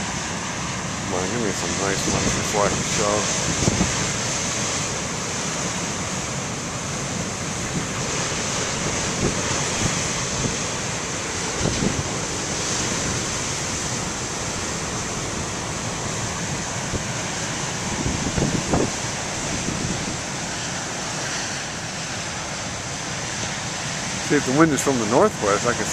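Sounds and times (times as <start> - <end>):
ocean waves breaking: 0.0 - 25.9
wind buffeting microphone: 1.1 - 5.3, 7.4 - 21.2.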